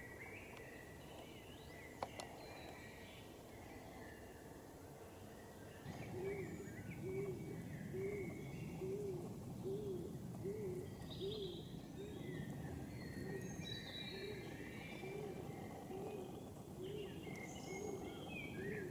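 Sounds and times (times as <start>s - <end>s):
small birds chirping: 0.0s - 18.9s
pigeon cooing: 5.9s - 11.6s, 14.1s - 18.9s.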